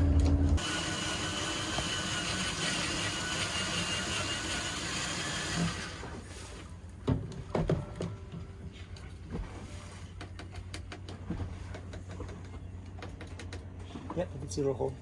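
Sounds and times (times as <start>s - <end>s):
power drill whining: 0.6s - 6.2s.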